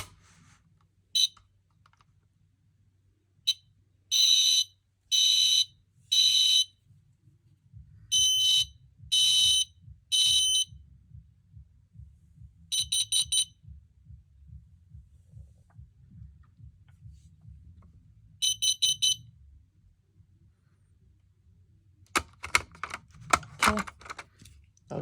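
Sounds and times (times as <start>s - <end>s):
smoke alarm high beeps: 1.2s - 1.4s, 3.5s - 6.7s, 8.1s - 10.7s, 12.7s - 13.6s, 18.4s - 19.3s
smoke alarm chirps: 3.5s - 6.7s, 8.1s - 10.7s, 12.7s - 13.5s, 18.4s - 19.2s.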